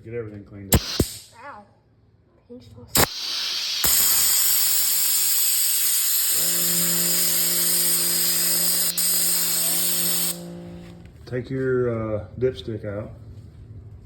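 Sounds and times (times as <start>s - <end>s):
air blow gun hissing: 0.8s - 1.4s, 3.0s - 11.0s
steady hum: 0.8s - 1.4s, 3.0s - 11.3s.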